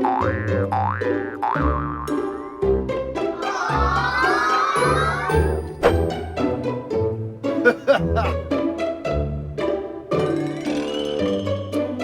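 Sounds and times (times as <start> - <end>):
playful background music: 0.0 - 12.0
gliding cheer-like sound effect: 3.3 - 5.6.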